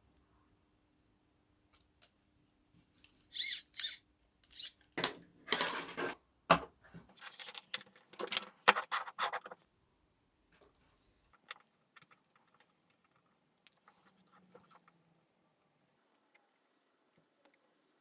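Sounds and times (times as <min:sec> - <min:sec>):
small parts and wires handled: 0:02.8 - 0:06.2, 0:07.1 - 0:09.6, 0:10.6 - 0:15.0.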